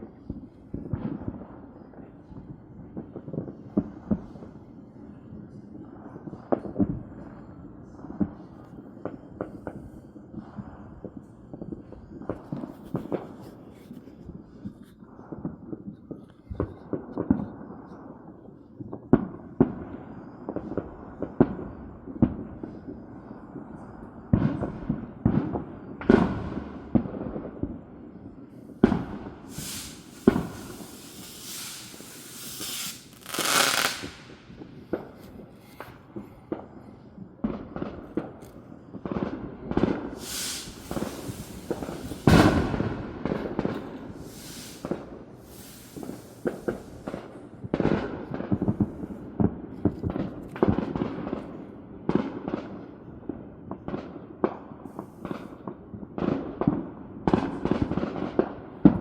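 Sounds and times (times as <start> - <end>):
fireworks bangs and pops: 0.0 - 4.7, 5.8 - 59.0
fireworks hissing bursts: 28.7 - 36.2, 39.9 - 47.6.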